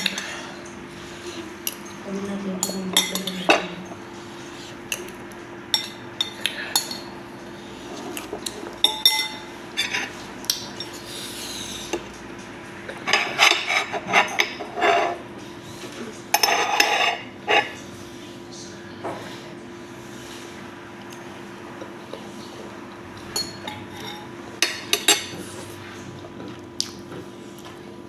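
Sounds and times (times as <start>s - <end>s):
cutlery clinking against dishes: 2.6s - 3.9s, 4.9s - 7.1s, 8.2s - 11.0s, 12.9s - 15.2s, 16.3s - 17.8s, 23.2s - 25.4s.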